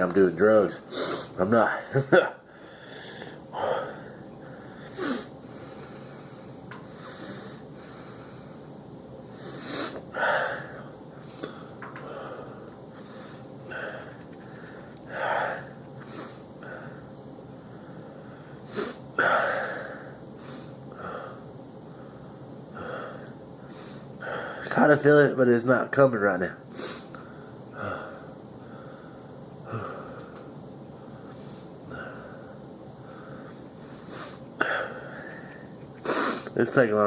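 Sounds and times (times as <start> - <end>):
man sniffing and snorting: 34.0 - 36.6.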